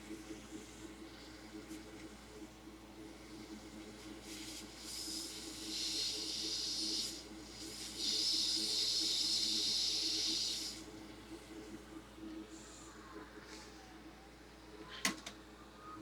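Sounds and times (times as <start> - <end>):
air hissing: 4.2 - 10.9.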